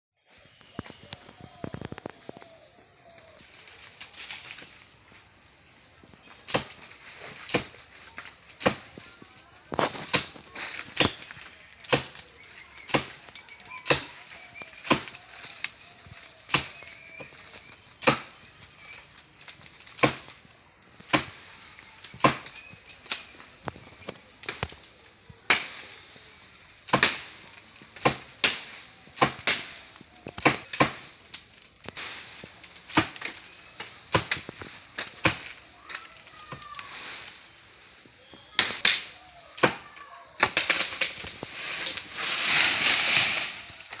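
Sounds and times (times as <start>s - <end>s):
rush of leaves and branches: 0.2s - 44.0s
wood cracking and snapping: 6.4s - 21.3s, 22.0s - 24.9s, 28.0s - 36.8s, 40.4s - 44.0s.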